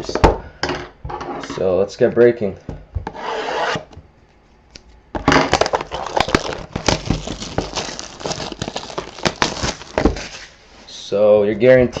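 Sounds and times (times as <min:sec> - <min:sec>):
plastic wrap tearing and crinkling: 0:05.5 - 0:10.6.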